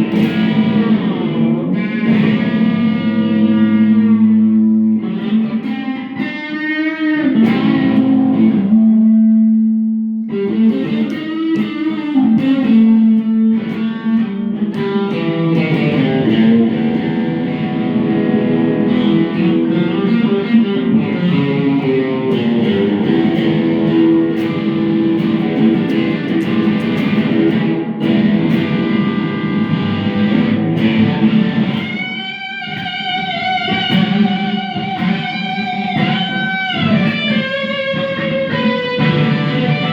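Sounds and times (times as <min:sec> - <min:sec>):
electric guitar lead line: 0:00.0 - 0:39.9.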